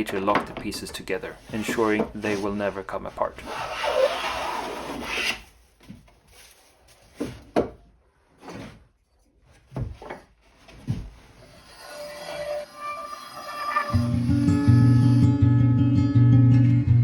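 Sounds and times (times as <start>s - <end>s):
wooden knocks and clacks: 0.0s - 2.3s, 7.1s - 7.9s, 9.6s - 11.2s
hand tool scraping wood: 0.7s - 5.6s
soft music: 11.7s - 17.0s.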